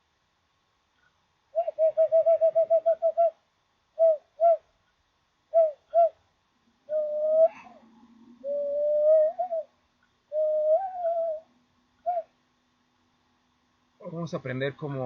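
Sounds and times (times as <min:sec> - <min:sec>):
cupped-hands whistle owl hoots: 0:01.5 - 0:03.4, 0:04.0 - 0:04.7, 0:05.5 - 0:06.2, 0:06.9 - 0:12.4.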